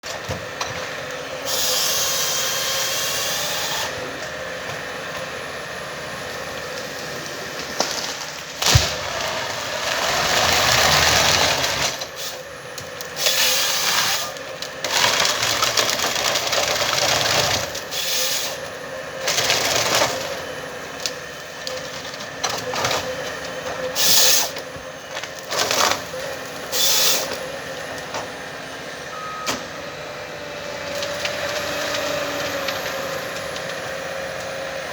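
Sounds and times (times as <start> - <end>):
forest harvester running: 0.0 - 34.9.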